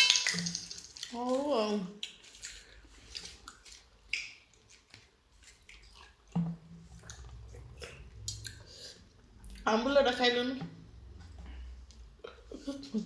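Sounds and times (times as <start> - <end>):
chewing and wet mouth sounds: 0.0 - 9.7.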